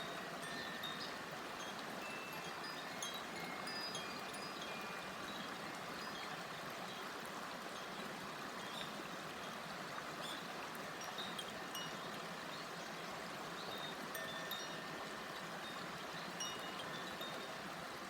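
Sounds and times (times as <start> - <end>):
river babbling over stones: 0.0 - 18.0.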